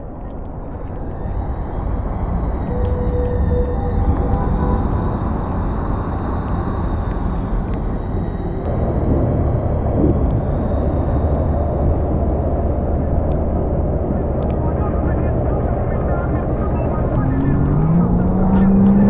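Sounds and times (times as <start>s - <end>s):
watercraft engine droning: 0.0s - 19.0s.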